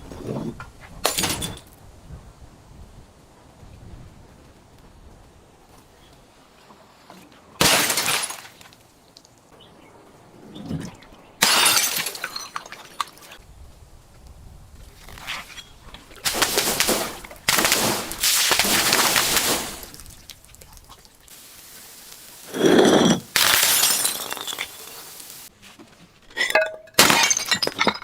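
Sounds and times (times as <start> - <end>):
glass bottles shattering: 1.0 - 1.6, 7.6 - 8.6, 11.4 - 13.3, 16.2 - 20.3, 22.4 - 25.5, 26.4 - 28.0
glass crunches: 7.6 - 8.7, 15.0 - 25.5, 26.4 - 28.0.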